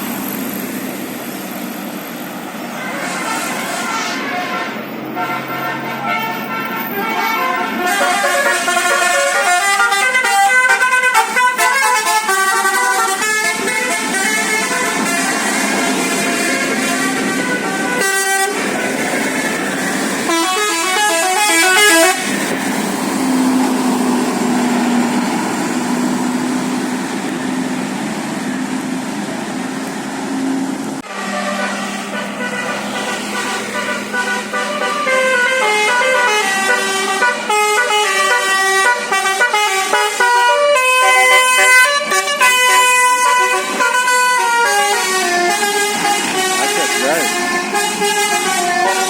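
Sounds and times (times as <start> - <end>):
musical bus horn melody: 2.7 - 22.3, 31.0 - 49.0.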